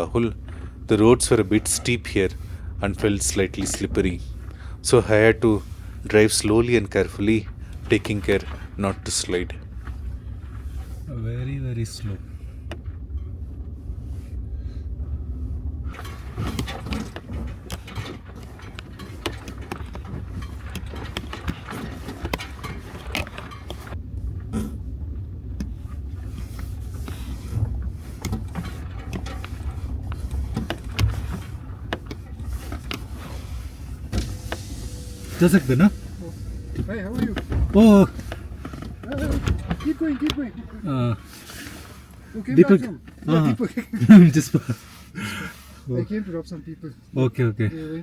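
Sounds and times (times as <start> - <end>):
car engine and road rumble: 0.0 - 48.0
irregular clicks and knocks: 15.9 - 43.3.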